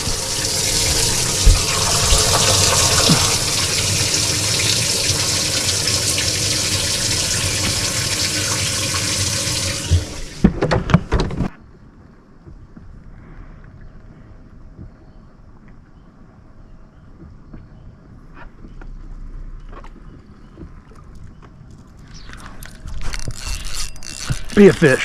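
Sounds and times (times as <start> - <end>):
aerator pump spraying water: 0.0 - 10.5.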